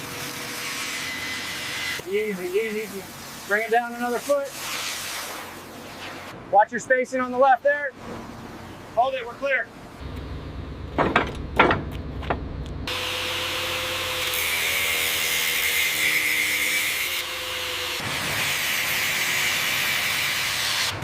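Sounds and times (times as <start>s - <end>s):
power tool cutting with hiss: 0.0s - 5.2s, 12.9s - 21.0s
low rumble: 10.0s - 12.9s
knocks: 10.9s - 12.5s
power tool whine: 12.9s - 21.0s.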